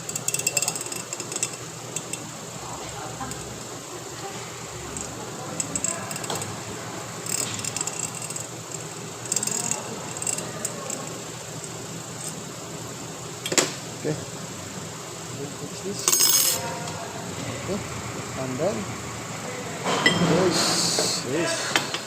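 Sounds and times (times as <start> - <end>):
steady background hum: 0.0 - 22.0
metal parts clinking: 16.0 - 16.6.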